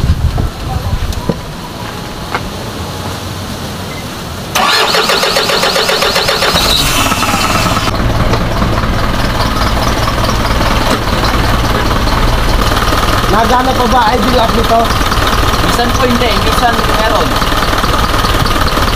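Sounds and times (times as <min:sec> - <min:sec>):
diesel engine idling: 0:04.4 - 0:18.9
starter motor cranking engine: 0:04.6 - 0:18.9.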